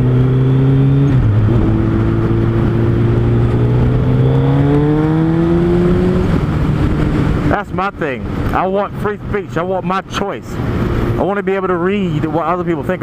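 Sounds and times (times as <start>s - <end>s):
motorcycle engine accelerating: 0.0s - 7.6s
wind rushing: 1.1s - 9.4s.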